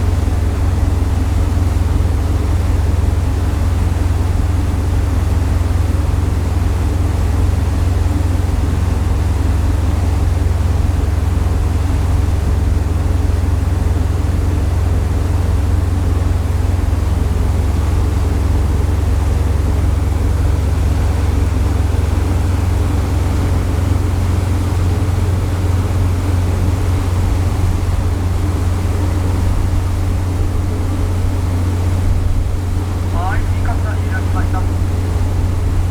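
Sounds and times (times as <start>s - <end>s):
ship engines droning: 0.0s - 35.9s
steady rushing noise: 30.0s - 35.9s.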